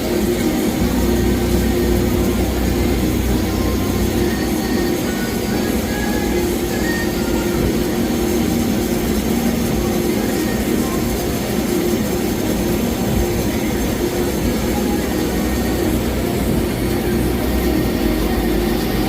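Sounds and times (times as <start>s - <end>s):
lathe humming and hissing: 0.0s - 19.0s.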